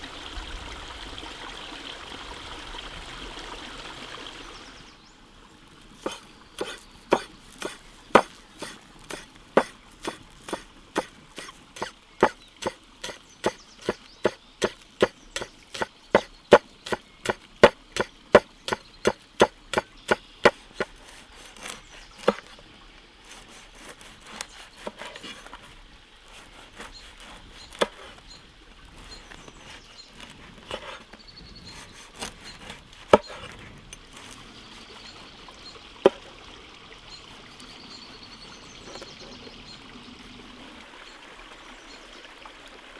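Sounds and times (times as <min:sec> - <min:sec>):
wooden chopping knocks: 0:06.0 - 0:21.0, 0:22.2 - 0:22.5.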